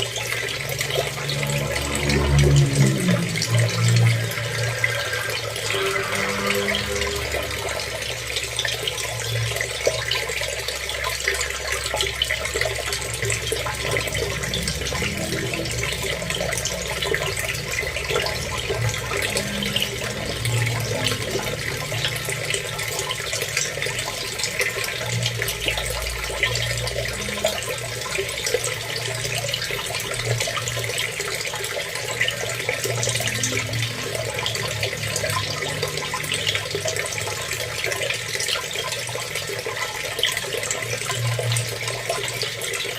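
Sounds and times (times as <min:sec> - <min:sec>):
flowing water splashing: 0:00.0 - 0:42.9
low rumble: 0:00.8 - 0:08.5.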